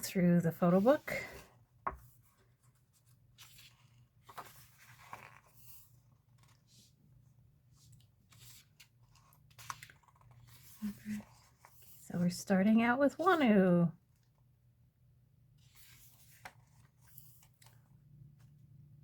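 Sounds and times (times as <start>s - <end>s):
paper rustling: 0.7s - 12.0s, 15.6s - 18.6s
soft clicks of pages turned: 1.8s - 7.0s, 7.8s - 12.0s, 15.6s - 18.7s.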